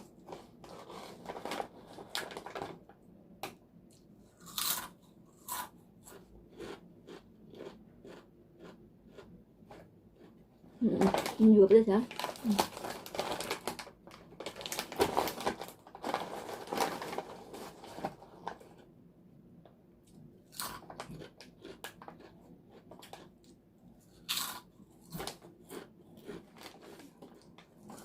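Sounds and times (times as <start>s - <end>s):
crunching of crisp chips: 3.9s - 10.4s, 20.1s - 28.0s.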